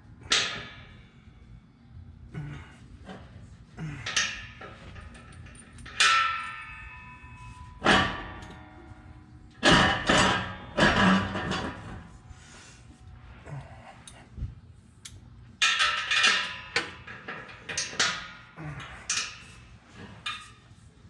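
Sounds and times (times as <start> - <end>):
metallic clangs of tools: 3.9 - 8.8.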